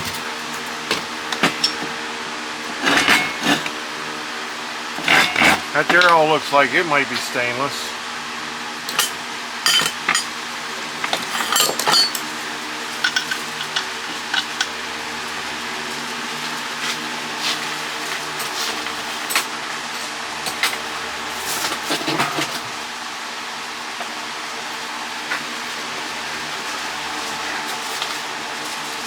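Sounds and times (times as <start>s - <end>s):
background hum: 0.0s - 19.5s
metal parts clinking: 0.9s - 1.9s, 2.8s - 3.8s, 5.0s - 6.3s, 8.9s - 10.4s, 11.0s - 14.8s.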